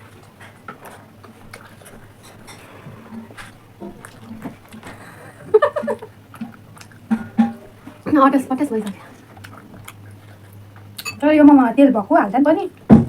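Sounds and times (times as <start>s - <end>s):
low steady hum: 0.0s - 13.0s
voice: 8.0s - 9.2s, 11.1s - 12.8s.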